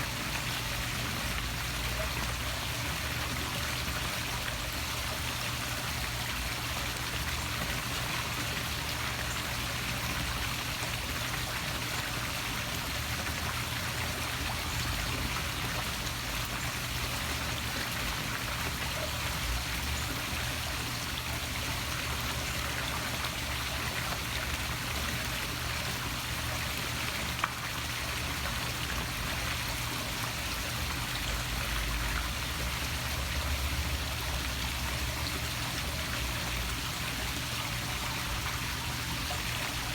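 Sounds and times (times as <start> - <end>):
waterfall splashing into pool: 0.0 - 39.9.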